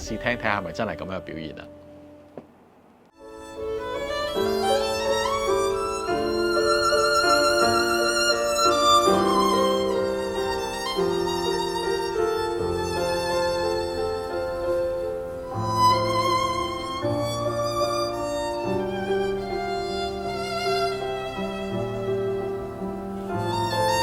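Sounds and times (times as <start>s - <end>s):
held low accompanying notes: 0.0s - 2.4s
violin slow melody with vibrato: 3.2s - 24.0s.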